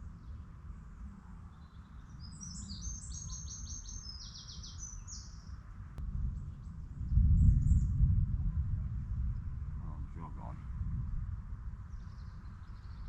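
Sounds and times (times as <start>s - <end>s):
songbird trilling: 1.6s - 5.4s
loud deep rumble: 6.0s - 12.9s
low rumble: 6.0s - 13.0s.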